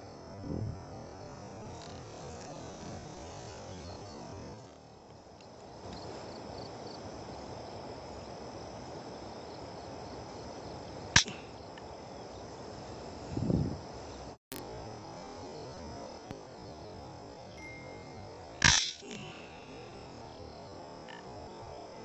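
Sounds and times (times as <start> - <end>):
insects chirring: 0.0 - 22.0
brief low rumble: 0.4 - 1.0.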